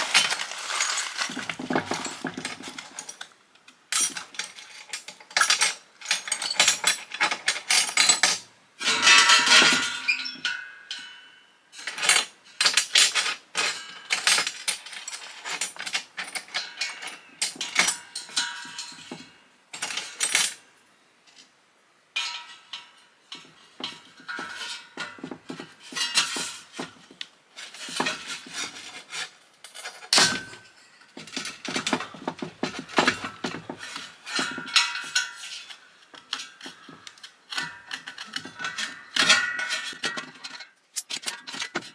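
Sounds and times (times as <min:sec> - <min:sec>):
metal parts clinking and clanking: 0:00.0 - 0:03.2, 0:04.0 - 0:10.5, 0:11.9 - 0:19.2, 0:29.7 - 0:41.9.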